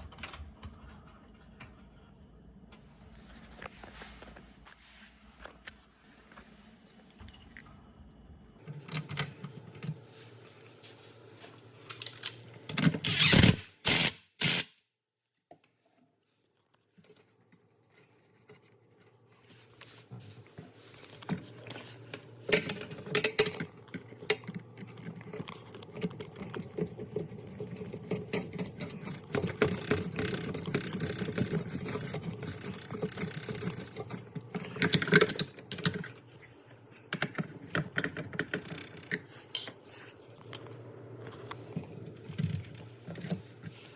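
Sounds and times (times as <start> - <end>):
dishwasher humming and rattling: 0.0 - 2.0, 7.2 - 13.5, 19.4 - 43.9.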